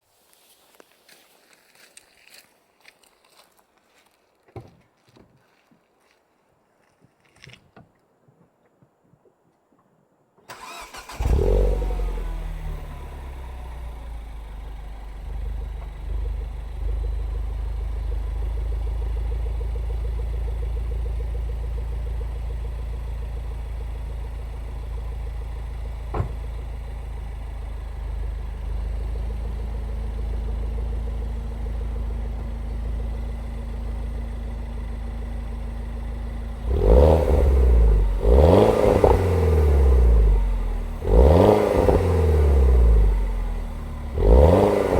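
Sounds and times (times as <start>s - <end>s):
car engine revving: 10.5s - 44.9s
car engine starting and idling: 10.5s - 44.9s.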